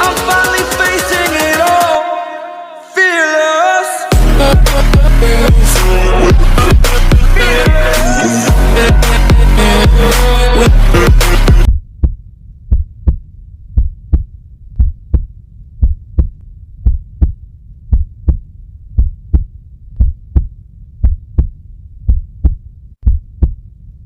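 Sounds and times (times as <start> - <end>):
heartbeat thumps: 4.1 - 7.9, 10.7 - 23.7
faint low hum: 11.7 - 24.0.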